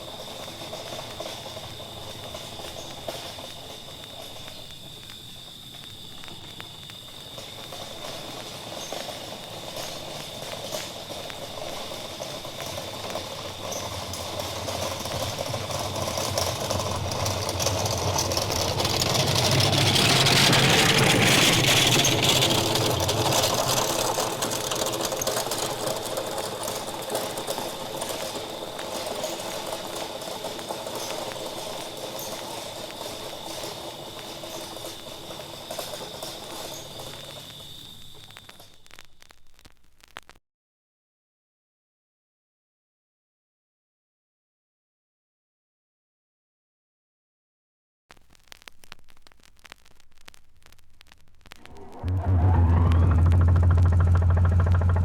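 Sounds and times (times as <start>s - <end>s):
vehicle passing with rattle: 0.0s - 4.6s, 7.4s - 37.7s, 51.6s - 55.0s.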